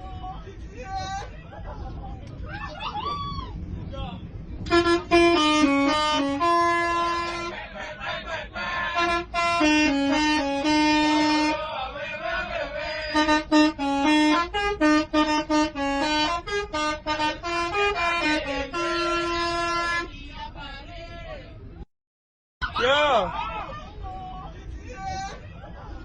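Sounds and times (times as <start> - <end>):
musical bus horns playing melody: 4.5 - 20.4.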